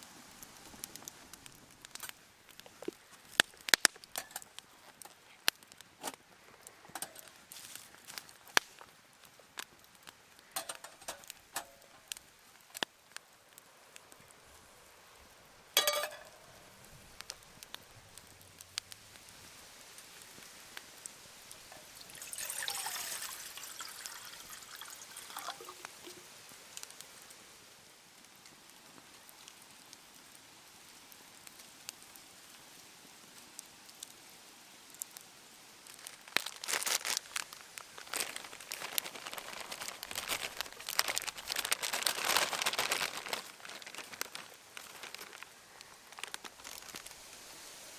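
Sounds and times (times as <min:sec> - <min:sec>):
small clicks and knocks: 0:10.4 - 0:12.9
liquid being poured: 0:21.8 - 0:26.2
plastic wrapper crinkling: 0:35.9 - 0:47.2.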